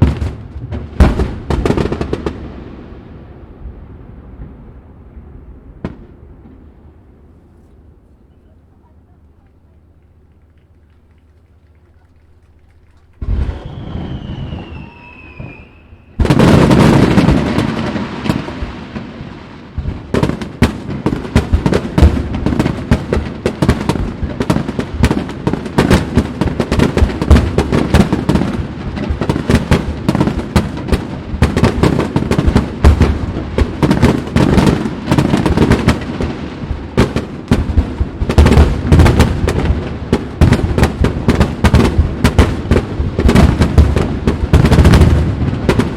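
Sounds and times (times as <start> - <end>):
firework boom: 0.0 - 8.0, 13.0 - 45.9
firework bangs and crackle: 0.0 - 45.9
firework whistle: 10.9 - 18.8.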